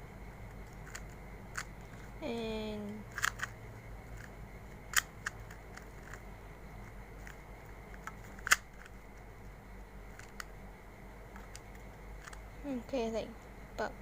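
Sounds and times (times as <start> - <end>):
puzzle cube clicking: 0.5 - 1.8, 3.1 - 3.6, 4.2 - 6.2, 7.2 - 9.0, 10.1 - 10.5
puzzle cube snap: 3.1 - 3.6, 4.9 - 6.2, 8.0 - 9.0.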